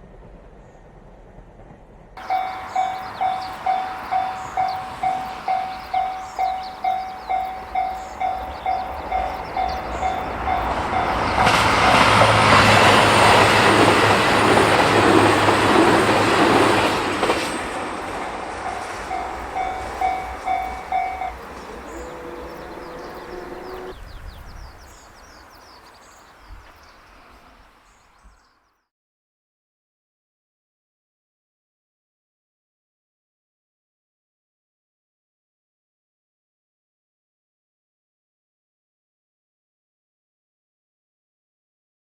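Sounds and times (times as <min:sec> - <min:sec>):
diesel train passing: 0:00.0 - 0:28.2
level crossing bell ringing: 0:02.2 - 0:12.6, 0:18.7 - 0:23.9.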